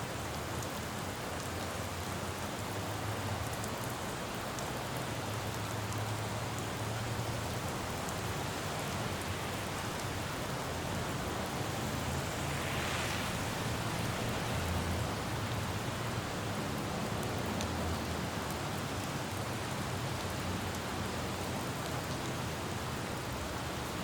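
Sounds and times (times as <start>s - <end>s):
rain falling on road: 0.0s - 24.0s
road traffic rumble: 3.0s - 21.8s.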